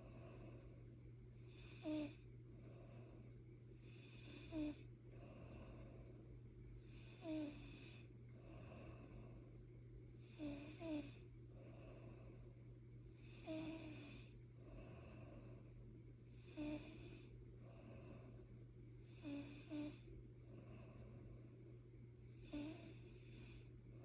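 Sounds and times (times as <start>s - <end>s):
steady low hum: 0.0s - 24.0s
rasping snoring snorts: 1.6s - 2.2s, 7.0s - 8.0s, 10.3s - 11.2s, 13.3s - 14.3s, 16.4s - 17.2s, 19.2s - 20.0s, 22.4s - 23.4s.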